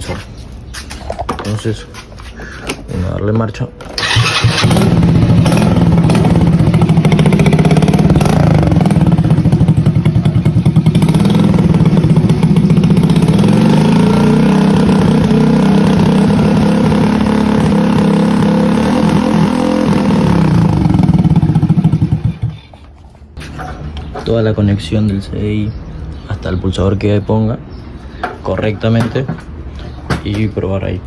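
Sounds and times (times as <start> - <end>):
small engine idling: 4.0 - 22.7.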